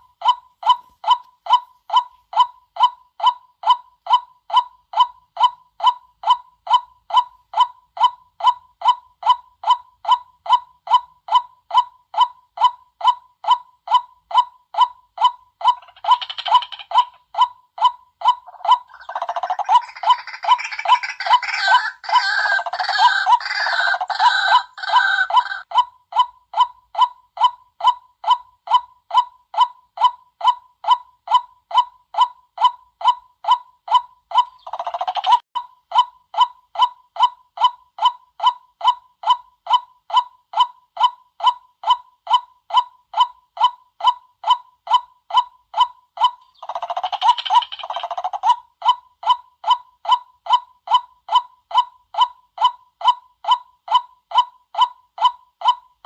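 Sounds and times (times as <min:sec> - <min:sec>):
waterhen kwak calls: 0:18.4 - 0:25.6.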